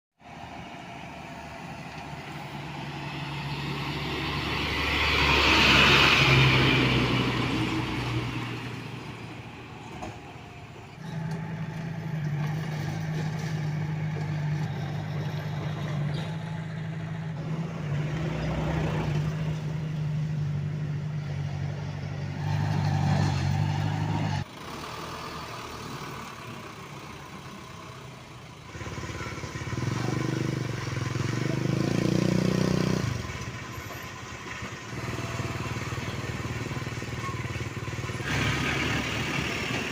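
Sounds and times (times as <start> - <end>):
diesel engine drone: 0.2 - 39.9
engine revving up: 2.2 - 9.2, 28.7 - 33.4, 34.9 - 39.9.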